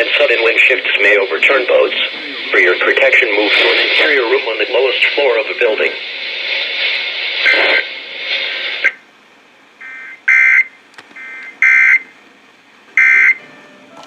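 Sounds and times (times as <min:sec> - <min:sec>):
radio static: 0:00.0 - 0:09.0.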